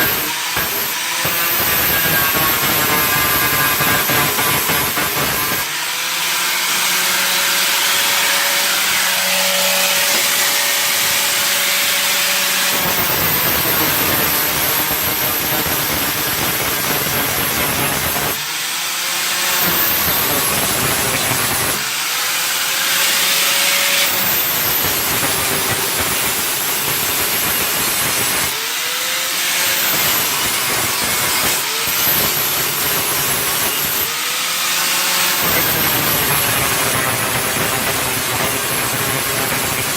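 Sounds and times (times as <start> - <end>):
angle grinder grinding metal: 0.0 - 39.9
grinder spinning freely whine: 0.0 - 39.9.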